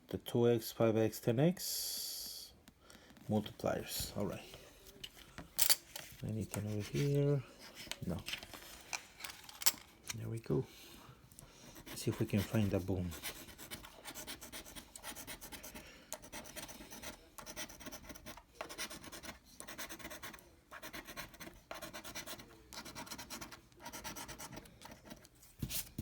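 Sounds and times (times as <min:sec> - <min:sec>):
scratching lottery ticket: 0:06.2 - 0:08.8, 0:11.6 - 0:25.9.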